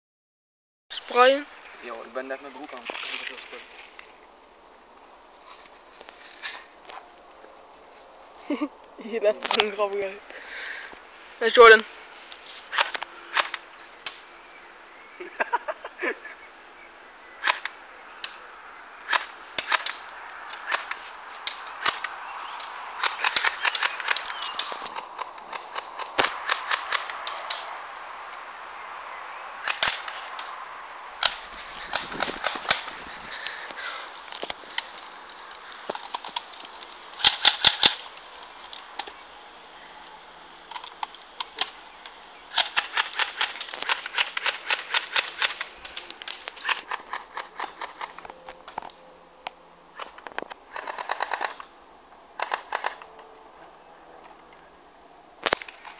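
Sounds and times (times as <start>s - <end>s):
airsoft guns firing: 23.0s - 24.8s, 37.2s - 38.0s.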